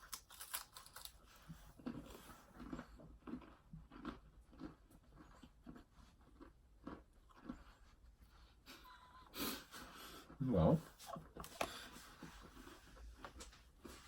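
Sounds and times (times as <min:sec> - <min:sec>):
chewing crunchy cracker: 0:00.0 - 0:08.2.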